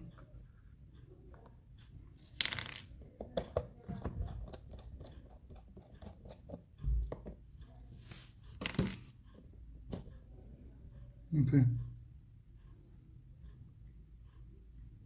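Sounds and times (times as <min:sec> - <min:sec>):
small parts clicking and scraping: 0:02.2 - 0:03.0.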